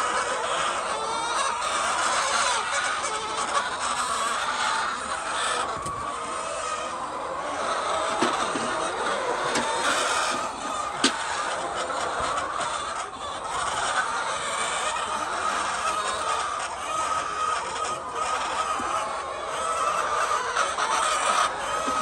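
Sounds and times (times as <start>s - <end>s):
hens clucking: 0.0s - 22.0s.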